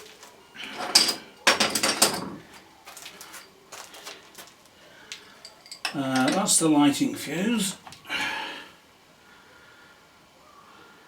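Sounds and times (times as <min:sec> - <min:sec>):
rattling clatter of small parts: 0:00.1 - 0:06.5.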